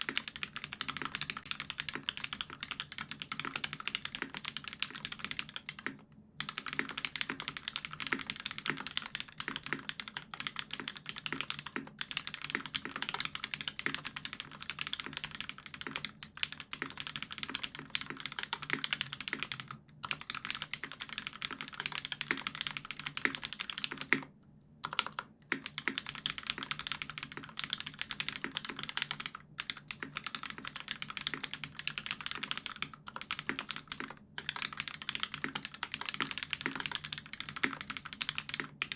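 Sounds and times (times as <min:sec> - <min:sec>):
mechanical keyboard typing: 0:00.0 - 0:38.9.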